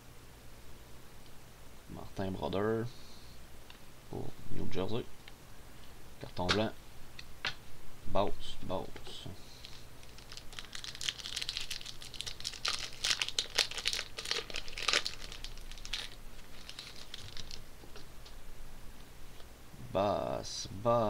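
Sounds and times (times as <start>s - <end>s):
foil wrapper crinkling and tearing: 9.6s - 17.7s.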